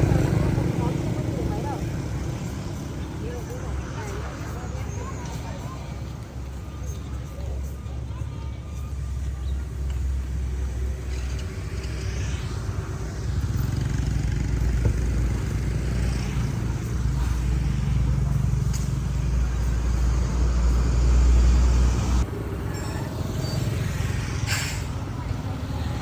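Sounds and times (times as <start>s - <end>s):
road vehicle rumble and hiss: 0.0s - 26.0s.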